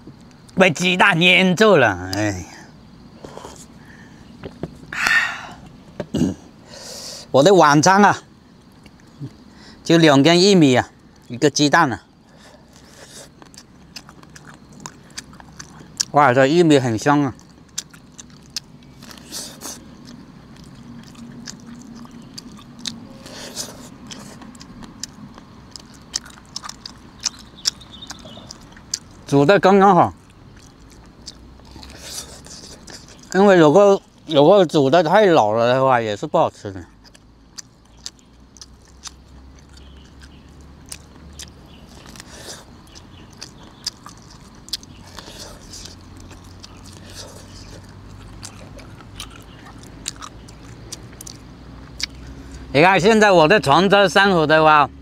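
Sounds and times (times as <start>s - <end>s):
faint low hum: 0.0s - 55.0s
mouth clicks: 4.4s - 6.4s, 17.3s - 29.3s, 37.0s - 52.7s
person chewing corn on the cob: 12.3s - 16.2s, 17.3s - 29.3s, 30.1s - 33.4s, 36.9s - 52.7s.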